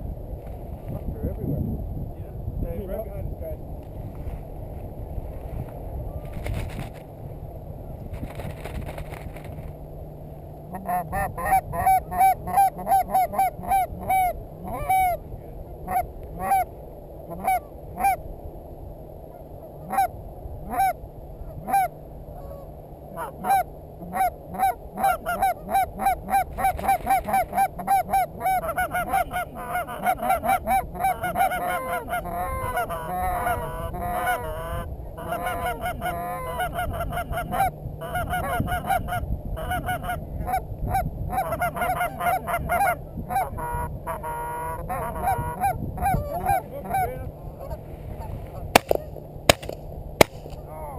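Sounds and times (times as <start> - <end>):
geese honking: 10.7 - 16.7, 17.3 - 18.2, 20.7 - 50.7.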